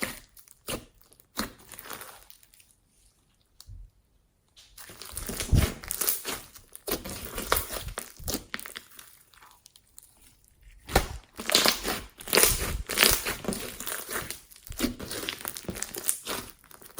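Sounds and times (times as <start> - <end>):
slime clicking and crackling: 0.0 - 2.8, 4.8 - 16.9.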